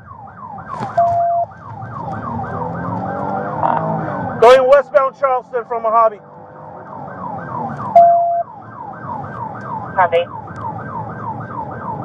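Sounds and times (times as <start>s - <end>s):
police siren yelping: 0.0s - 12.0s
loud steady beep: 1.0s - 1.5s, 7.9s - 8.5s
radio voice: 4.4s - 6.2s, 10.0s - 10.3s.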